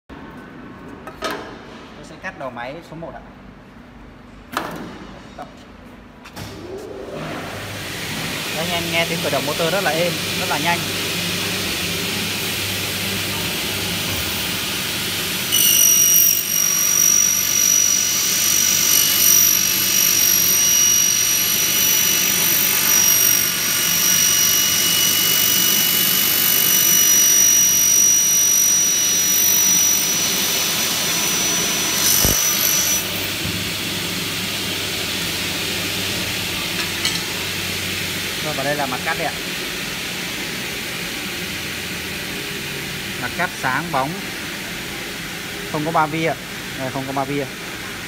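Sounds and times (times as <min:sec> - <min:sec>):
saw motor running: 0:08.5 - 0:39.2
saw blade whining through metal: 0:11.8 - 0:34.6.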